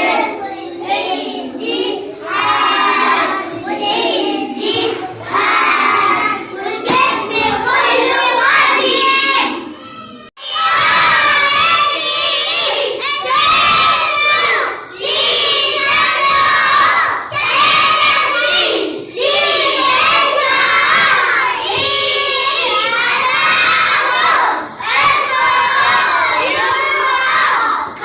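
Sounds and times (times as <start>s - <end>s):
children chanting in unison: 0.0s - 9.8s, 10.4s - 28.0s.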